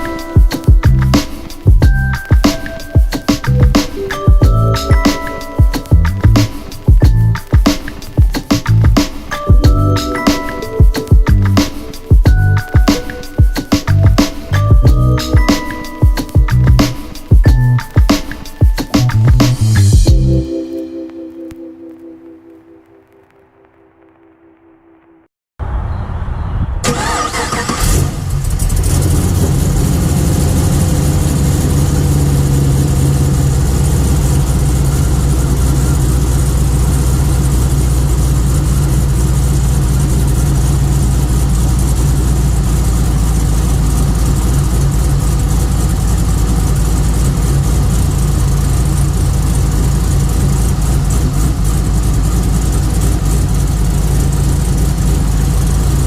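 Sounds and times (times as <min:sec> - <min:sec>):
car engine starting and idling: 0:26.8 - 0:56.0.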